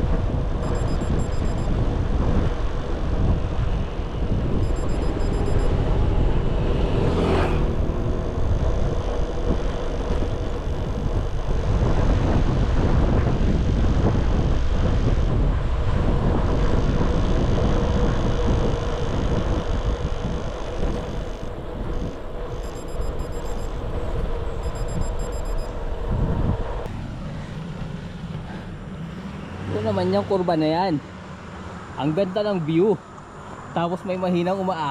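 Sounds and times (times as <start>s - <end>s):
faint steady hum: 0.0s - 6.7s, 13.9s - 29.2s
wind buffeting microphone: 0.0s - 29.8s.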